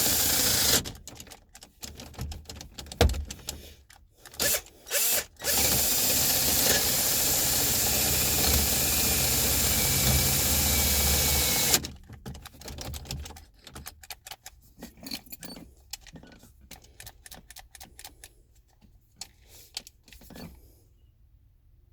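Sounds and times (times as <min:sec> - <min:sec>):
power drill drilling metal: 0:00.0 - 0:00.8, 0:04.4 - 0:11.8
metal clicks and rattles: 0:00.7 - 0:04.6, 0:11.5 - 0:20.6.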